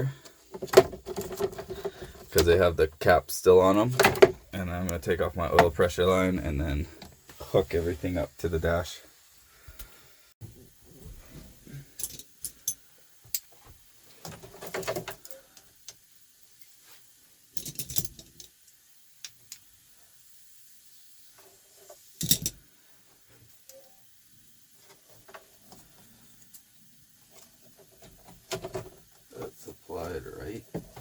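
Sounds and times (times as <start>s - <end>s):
metal fittings clicking and rattling: 17.6s - 19.7s.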